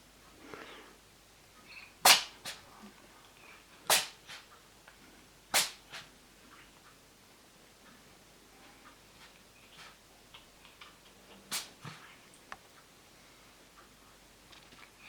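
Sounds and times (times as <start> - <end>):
cat sneezing: 2.0 - 2.6, 3.9 - 4.5, 5.5 - 6.1, 11.5 - 12.0.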